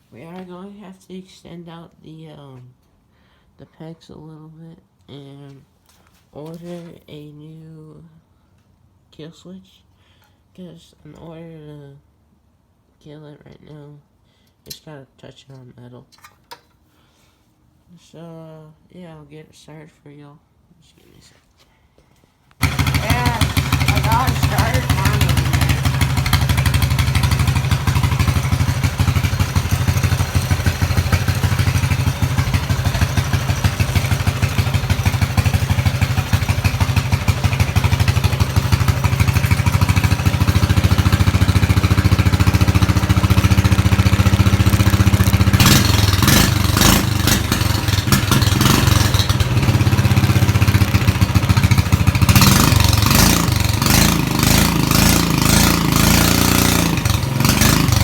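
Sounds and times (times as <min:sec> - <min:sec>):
loud mini bike engine running: 0:22.6 - 0:58.0.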